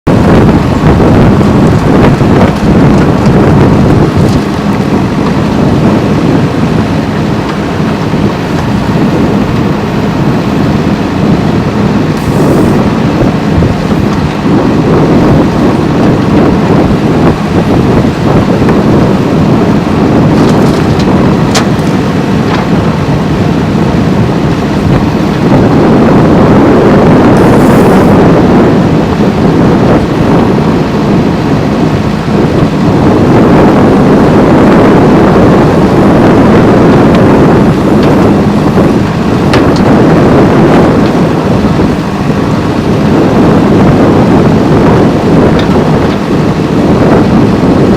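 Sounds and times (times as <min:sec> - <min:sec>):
diesel engine under load: 0:00.1 - 0:47.9.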